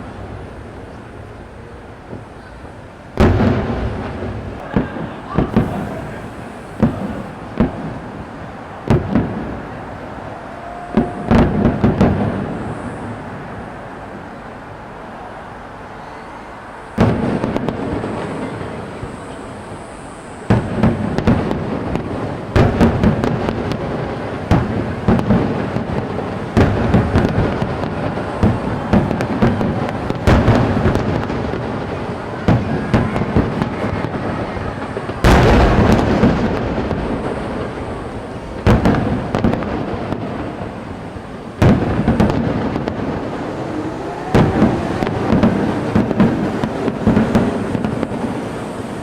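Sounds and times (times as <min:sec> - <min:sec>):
fireworks booming with echo: 0:00.0 - 0:49.0.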